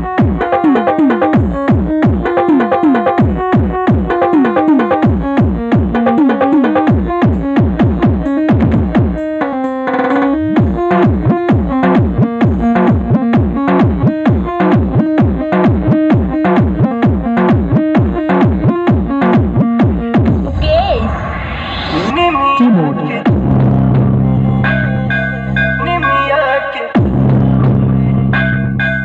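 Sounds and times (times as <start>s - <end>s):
electronic dance beat: 0.0s - 29.0s
held synth chord: 23.4s - 26.4s.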